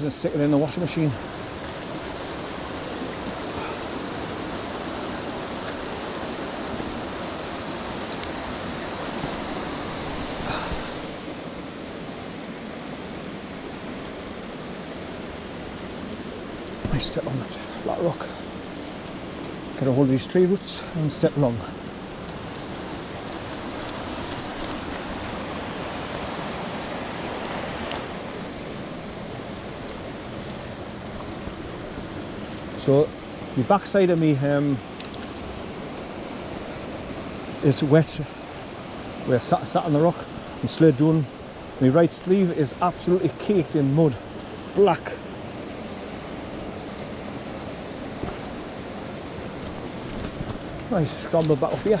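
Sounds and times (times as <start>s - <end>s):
waterfall rushing: 0.0s - 52.0s.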